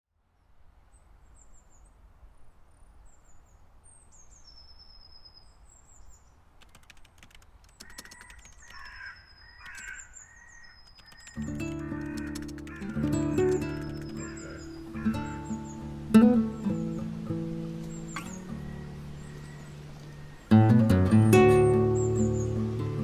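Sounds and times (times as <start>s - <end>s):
small birds chirping: 2.9s - 23.0s
faint clicks: 6.5s - 15.6s
crow cawing: 7.8s - 15.9s, 18.1s - 20.5s.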